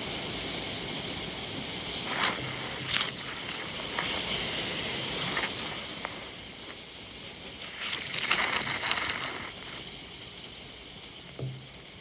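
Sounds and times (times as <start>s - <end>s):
rain falling: 0.0s - 12.0s.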